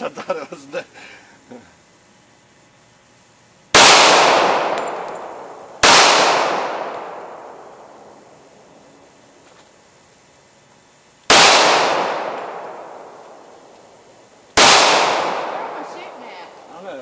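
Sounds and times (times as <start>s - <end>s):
handgun shots echoing: 3.8s - 7.7s, 11.3s - 13.3s, 14.6s - 15.9s.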